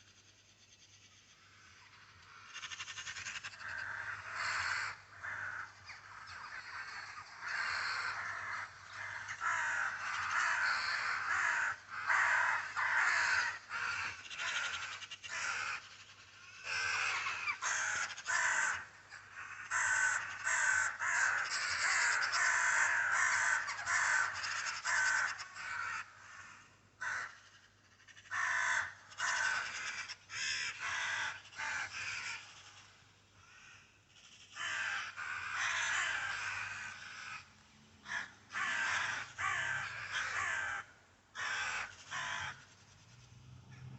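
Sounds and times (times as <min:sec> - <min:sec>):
birds giving raspy calls: 0:01.1 - 0:43.3.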